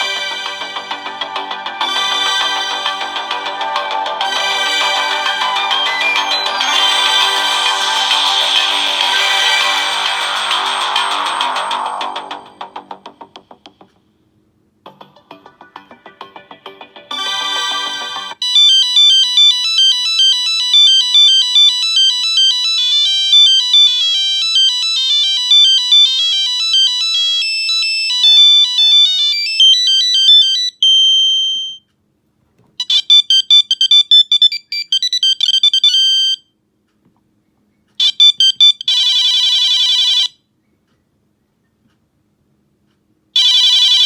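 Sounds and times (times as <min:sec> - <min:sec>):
fast high beeping ringtone melody: 0:00.0 - 0:13.3, 0:14.9 - 0:30.7
clusters of quick electronic notes: 0:01.8 - 0:13.1
warbling phone trill: 0:01.8 - 0:13.2.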